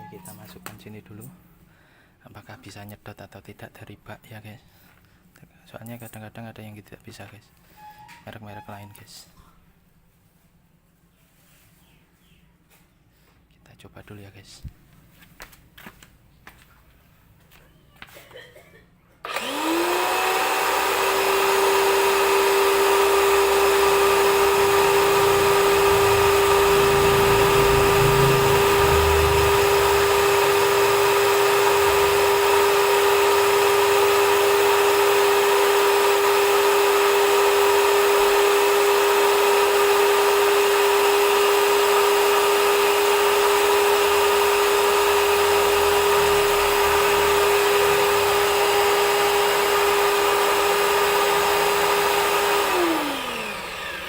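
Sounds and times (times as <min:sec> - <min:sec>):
pressure washer motor whine: 0:19.3 - 0:54.0
low rumbling: 0:24.8 - 0:31.1.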